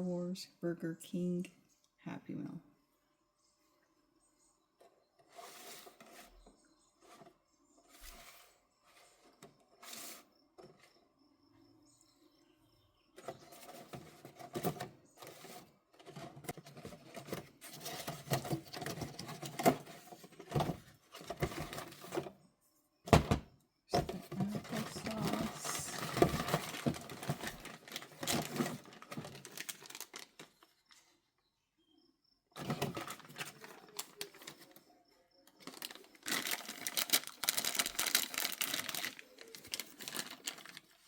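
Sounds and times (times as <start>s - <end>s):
packaging rustling and crinkling: 13.2s - 22.3s, 23.1s - 31.0s, 32.6s - 34.8s, 35.6s - 41.0s.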